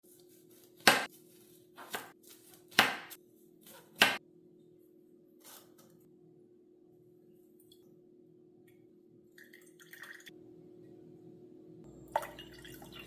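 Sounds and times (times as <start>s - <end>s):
knife chopping on cutting board: 0.5s - 1.2s, 1.8s - 4.2s.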